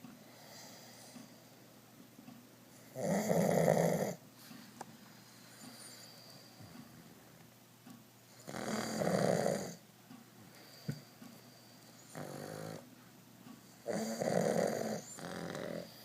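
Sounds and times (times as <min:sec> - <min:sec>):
dog snoring: 0:02.8 - 0:04.2, 0:08.3 - 0:09.8, 0:11.9 - 0:12.9, 0:13.7 - 0:16.0.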